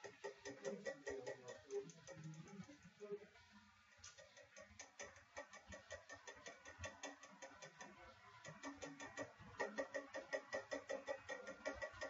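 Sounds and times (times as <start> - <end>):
knife tapping on glass screen: 0.0 - 2.5.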